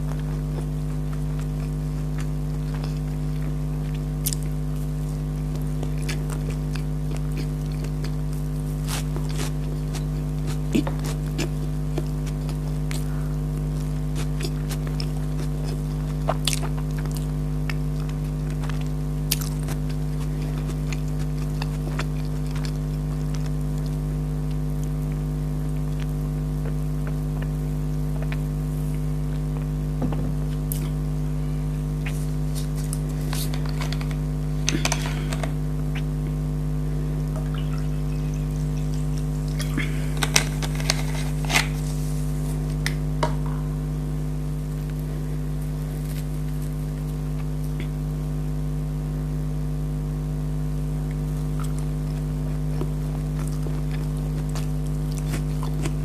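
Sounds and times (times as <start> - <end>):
chewing clicks and crunches: 0.0 - 4.6, 5.4 - 27.6, 32.0 - 36.1, 39.2 - 41.8, 51.1 - 56.0
steady low hum: 0.0 - 56.0.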